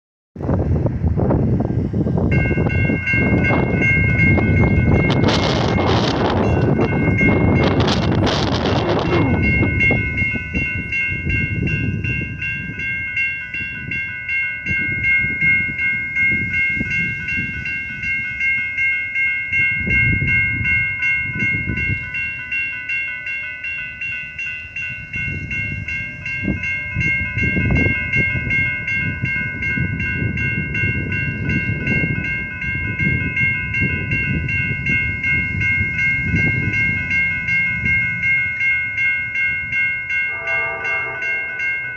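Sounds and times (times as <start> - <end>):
train wheels clattering on rails: 2.2 - 12.7
steady high ringing tones: 2.2 - 41.9.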